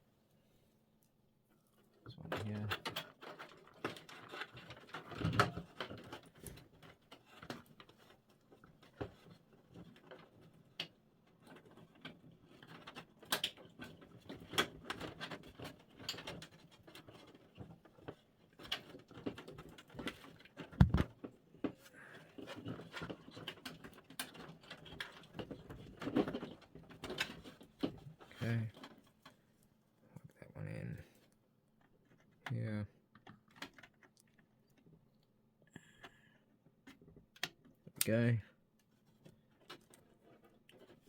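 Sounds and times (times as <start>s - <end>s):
power cable being handled: 18.8s - 21.3s.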